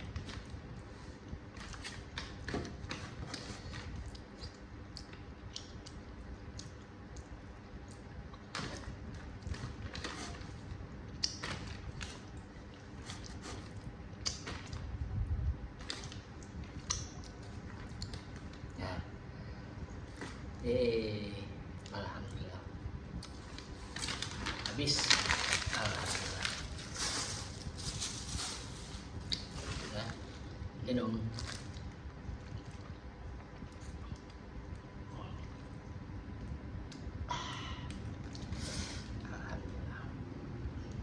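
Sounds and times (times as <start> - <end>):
faint steady hum: 0.0 - 41.0
person chewing noodles: 3.3 - 14.8.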